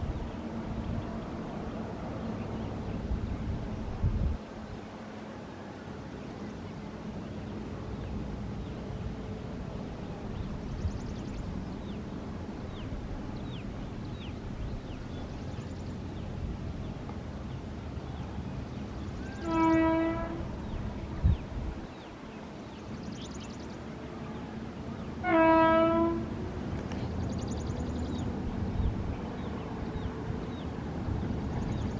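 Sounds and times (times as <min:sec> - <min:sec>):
freight train rumbling: 0:00.0 - 0:31.9
locomotive horn: 0:19.2 - 0:20.8, 0:25.2 - 0:26.5.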